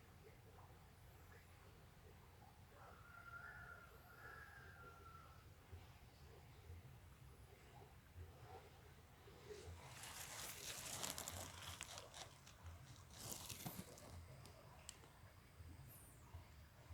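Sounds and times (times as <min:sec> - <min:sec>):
faint rustling and crackling: 0:09.2 - 0:16.2.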